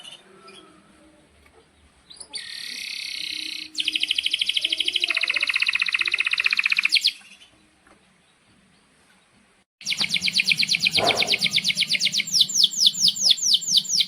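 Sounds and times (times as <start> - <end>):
canary singing trills: 2.0 - 7.6, 9.8 - 14.0.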